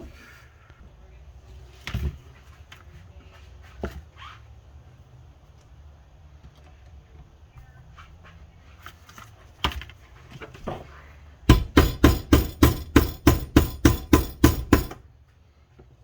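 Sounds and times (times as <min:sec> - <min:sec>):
hammer tapping metal case: 0:11.5 - 0:15.0.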